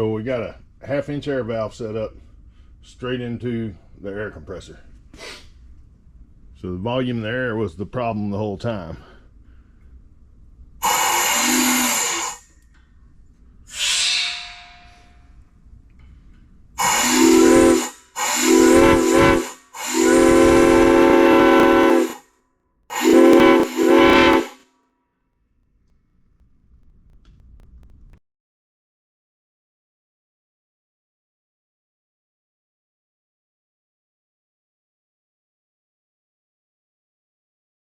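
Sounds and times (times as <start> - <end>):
brief hiss: 5.1 - 5.6, 13.7 - 15.2
steam whistle chord blasts: 10.8 - 12.4, 13.7 - 15.2, 16.8 - 22.3, 22.9 - 24.6
faint low rumble: 25.6 - 28.2
sharp clicks: 26.8 - 28.2.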